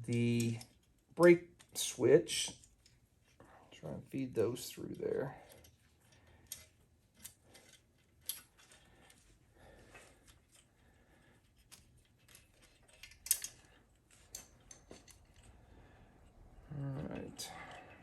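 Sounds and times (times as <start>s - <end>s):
wires rustling: 0.0s - 18.0s
plastic connectors clicking: 11.6s - 15.5s.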